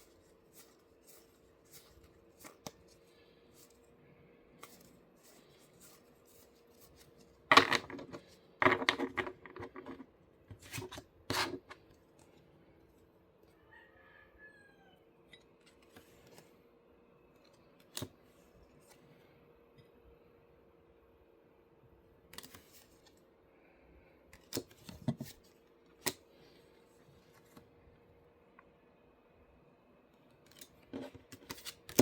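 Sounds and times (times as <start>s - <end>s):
cards and packaging clicking: 0.0s - 3.0s, 4.6s - 11.8s, 22.3s - 23.2s, 24.4s - 26.2s, 30.5s - 32.0s
faint steady hum: 0.0s - 32.0s.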